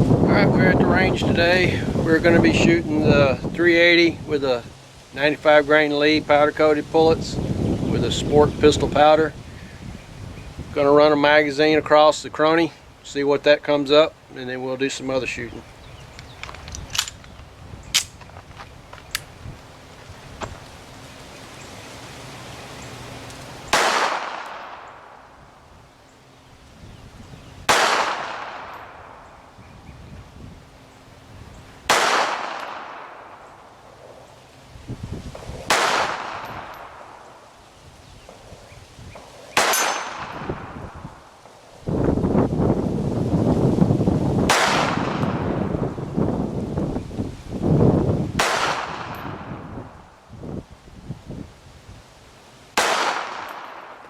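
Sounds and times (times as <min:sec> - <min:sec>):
pistol shots echoing: 0:23.7 - 0:25.2, 0:27.7 - 0:29.2, 0:31.9 - 0:33.4, 0:35.7 - 0:37.2, 0:39.6 - 0:40.7, 0:52.8 - 0:54.0.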